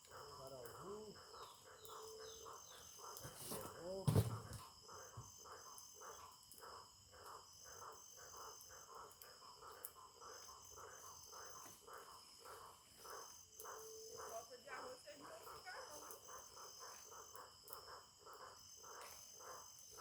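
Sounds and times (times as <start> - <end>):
crickets chirping: 0.0 - 20.0
rhythmic pulsing insect call: 0.0 - 20.0.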